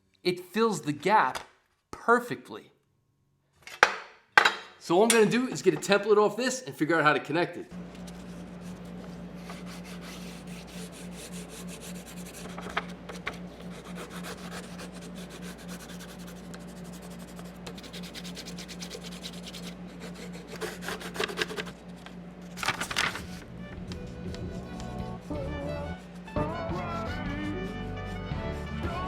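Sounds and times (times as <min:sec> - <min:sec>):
steady low hum: 0:07.6 - 0:28.7
hand rubbing and scratching: 0:07.9 - 0:23.4.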